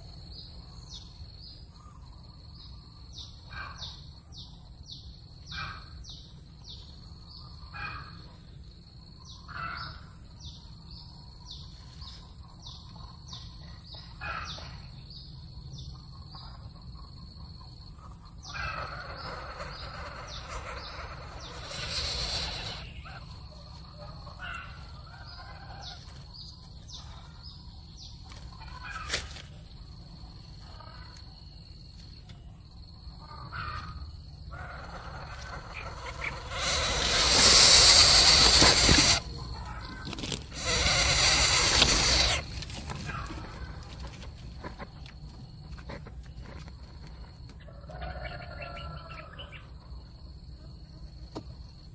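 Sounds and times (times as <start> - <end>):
birds chirping: 0.0 - 29.1, 32.4 - 45.3
steady high-pitched buzz: 18.3 - 25.5, 33.8 - 42.9
burst of noise: 36.0 - 39.3, 40.5 - 42.5.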